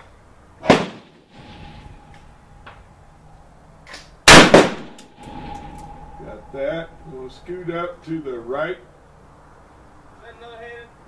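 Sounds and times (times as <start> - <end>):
gunshot: 0.6 - 1.2, 4.3 - 5.0
loud crack: 0.6 - 2.9, 3.9 - 6.0.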